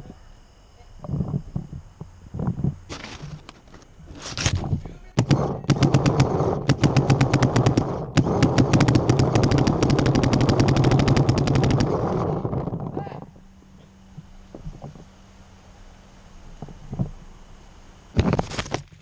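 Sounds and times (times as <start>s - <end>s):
paintball marker firing: 2.9s - 12.0s.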